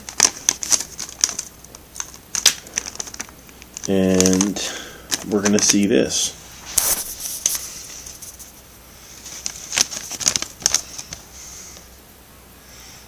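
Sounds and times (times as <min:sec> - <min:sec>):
items clicking and rustling: 0:00.0 - 0:05.9, 0:09.2 - 0:11.9
faint steady hiss: 0:00.0 - 0:13.0.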